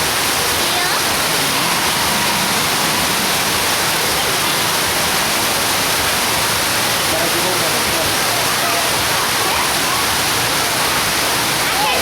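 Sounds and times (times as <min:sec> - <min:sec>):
torrential rain pouring: 0:00.0 - 0:12.0.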